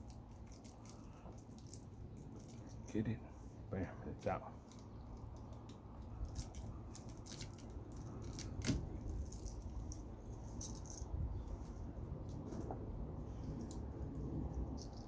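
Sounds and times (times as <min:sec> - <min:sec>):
metal tools clicking and rattling: 0:04.6 - 0:11.6.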